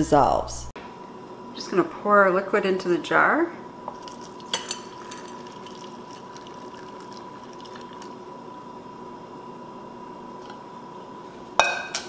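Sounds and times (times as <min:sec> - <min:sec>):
liquid pouring into a jar: 0:03.9 - 0:08.2.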